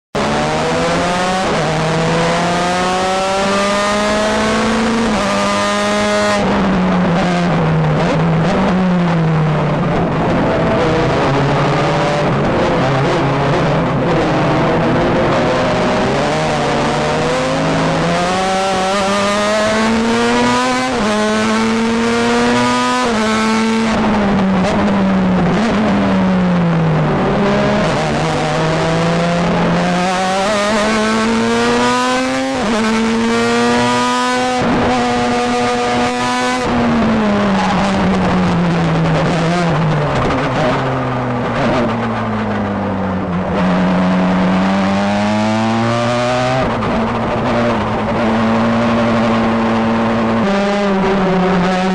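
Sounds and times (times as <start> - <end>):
race car engine revving and shifting: 0.2 - 51.9.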